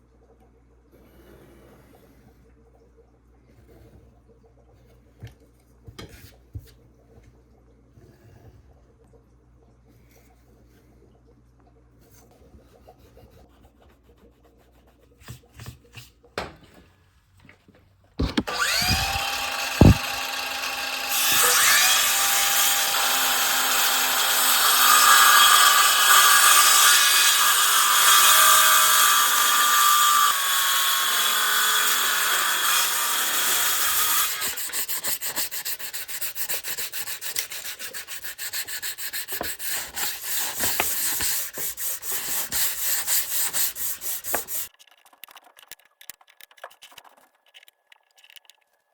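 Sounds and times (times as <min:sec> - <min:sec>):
power tool cutting wood: 0:18.2 - 0:44.7
rubbing strokes on wood: 0:33.9 - 0:44.7.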